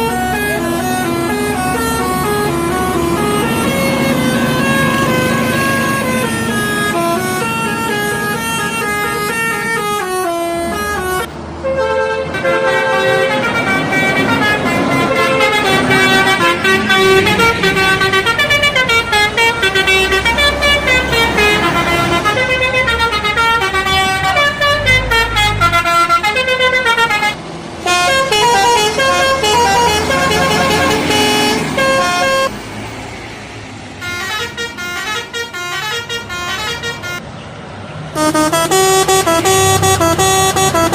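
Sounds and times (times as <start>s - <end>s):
multi-tone air horns playing melodies: 0.0s - 32.5s, 34.0s - 37.2s, 38.2s - 40.9s.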